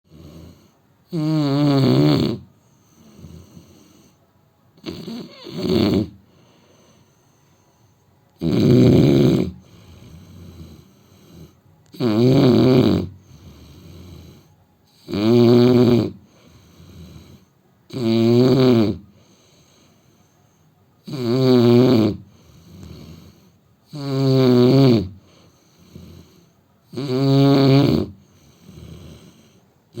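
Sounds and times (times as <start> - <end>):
quiet breathing: 0.1 - 1.1, 2.3 - 8.4, 9.1 - 12.0, 13.0 - 15.1, 16.0 - 17.9, 19.0 - 21.1, 22.0 - 27.1, 27.8 - 30.0
man snoring: 0.1 - 4.2, 4.8 - 7.2, 8.4 - 19.8, 21.0 - 30.0.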